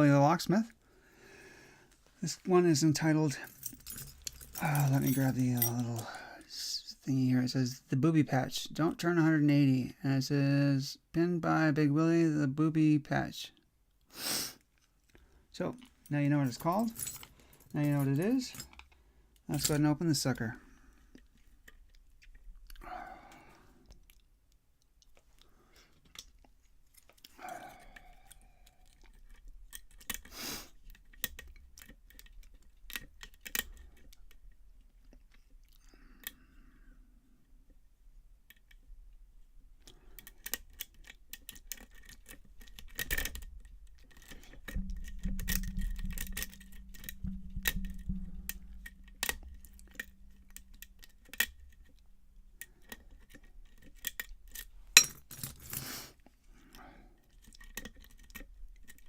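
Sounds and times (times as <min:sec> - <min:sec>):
low hum: 0:43.4 - 0:52.7.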